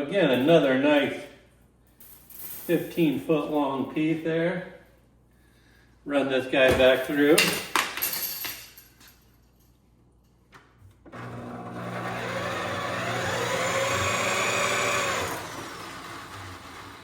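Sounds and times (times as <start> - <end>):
wire-stripping machine motor whine: 11.1 - 17.0.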